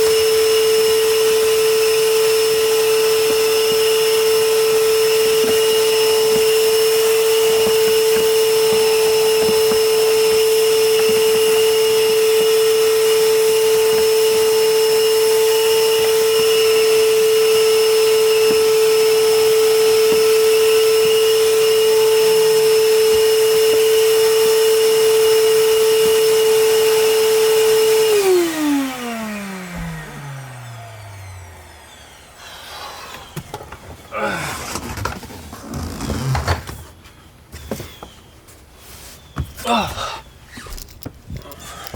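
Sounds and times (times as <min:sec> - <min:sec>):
vacuum cleaner motor whine: 0:00.0 - 0:36.8.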